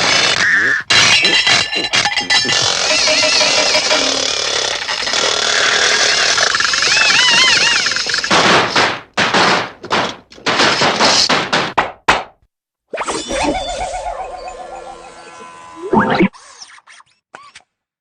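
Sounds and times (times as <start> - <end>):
noisy bursts: 1.0 - 9.8
wobbling tone: 1.2 - 8.3, 13.0 - 16.3.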